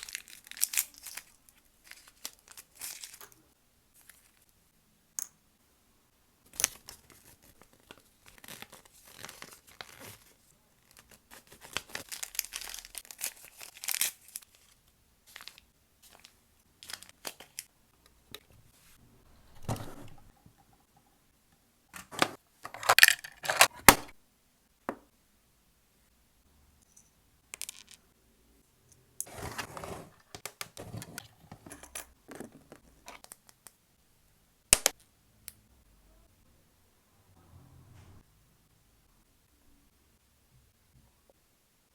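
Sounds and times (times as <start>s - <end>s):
packaging torn and crinkled: 0.0s - 3.2s, 10.9s - 14.7s.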